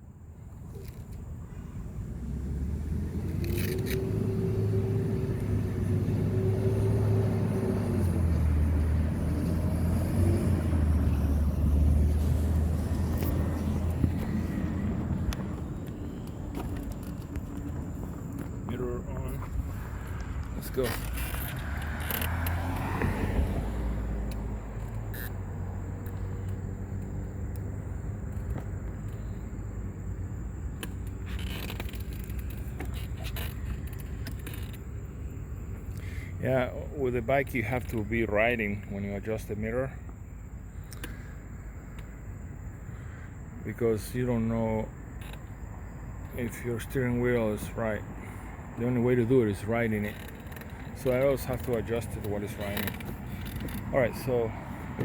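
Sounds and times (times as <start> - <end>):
motor vehicle rumble: 0.0 - 55.0
car driving past: 2.0 - 17.2, 18.7 - 26.5
constant hum: 23.6 - 55.0.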